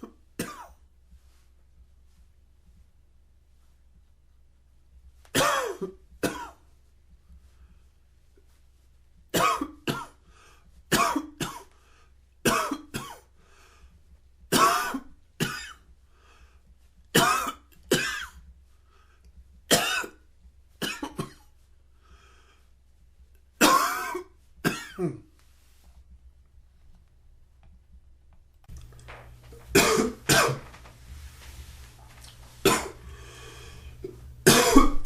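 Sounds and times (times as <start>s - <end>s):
man coughing: 0.0s - 0.8s, 5.4s - 6.6s, 19.7s - 20.2s, 23.6s - 25.3s, 29.7s - 30.7s, 32.6s - 35.0s.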